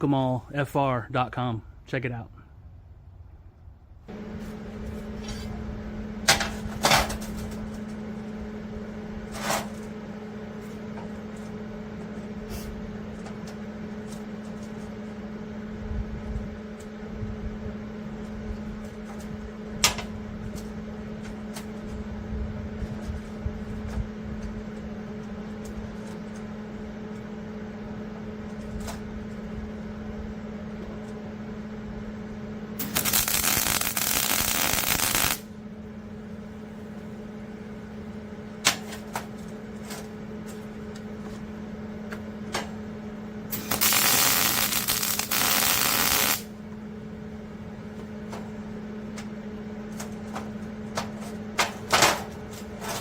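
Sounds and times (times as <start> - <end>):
electric hum: 30.0 - 38.6, 43.3 - 47.6
welding arc crackling: 32.8 - 35.5, 43.5 - 46.5.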